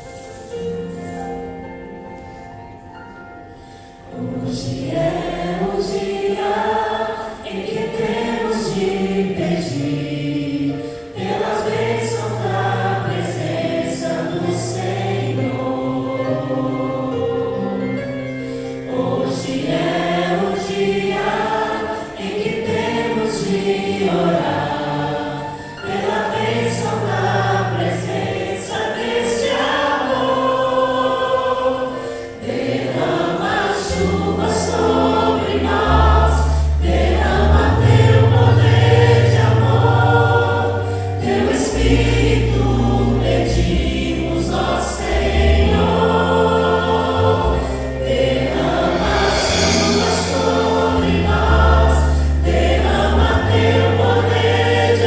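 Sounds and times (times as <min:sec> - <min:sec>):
choir singing gospel: 0:03.7 - 0:55.0
deep bass held notes: 0:33.9 - 0:55.0.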